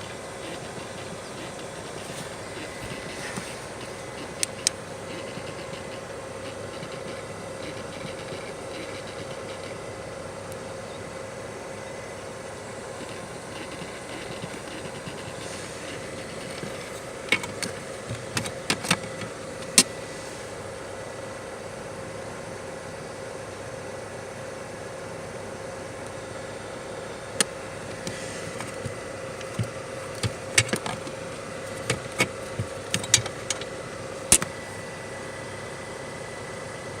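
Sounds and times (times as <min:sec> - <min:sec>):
sharp clicks and knocks: 0:00.0 - 0:09.8, 0:13.0 - 0:19.9, 0:27.4 - 0:33.7, 0:34.3 - 0:34.6
servo motor humming: 0:00.0 - 0:09.9, 0:12.9 - 0:20.5, 0:27.7 - 0:34.8.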